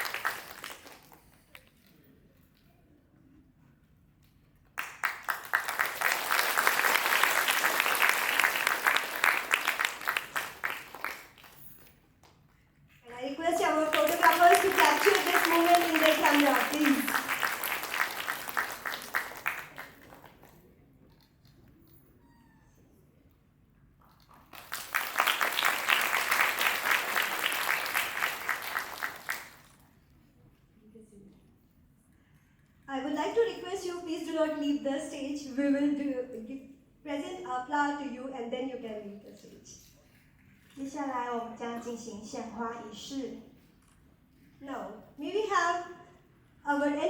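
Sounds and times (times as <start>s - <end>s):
audience applauding: 0.0s - 1.5s, 4.8s - 11.8s, 13.6s - 20.4s, 24.4s - 29.8s.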